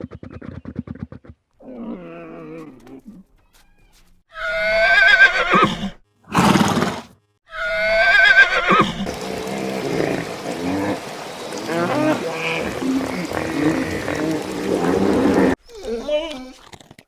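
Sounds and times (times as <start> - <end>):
low animal sounds: 1.6 - 3.3, 9.0 - 16.8
horse whinnying: 4.4 - 7.0, 7.6 - 9.1
horse snorting: 8.8 - 15.6.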